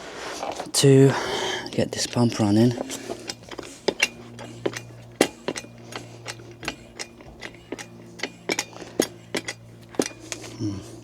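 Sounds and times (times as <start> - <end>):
sharp metallic clicks and knocks: 2.0 - 10.5
hydraulic hand pump clicking: 2.1 - 10.6.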